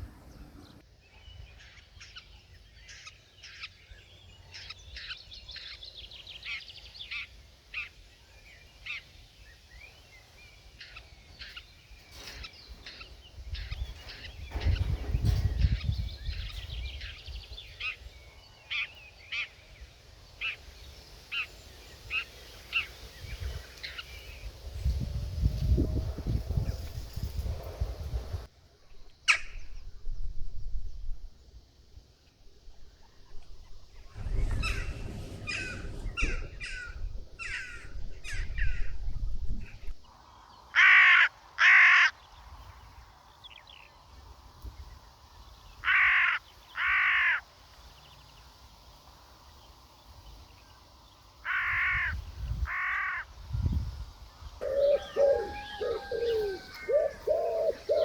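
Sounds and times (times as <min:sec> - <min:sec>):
lower quick bird calls: 0:33.9 - 0:39.9
crow cawing: 0:40.8 - 0:42.1, 0:45.8 - 0:47.4, 0:51.5 - 0:53.2.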